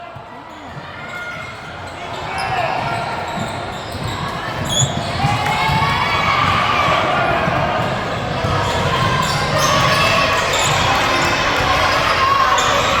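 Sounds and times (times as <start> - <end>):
spectators' voices and calls: 0.0 - 13.0
basketball bouncing: 2.4 - 11.0.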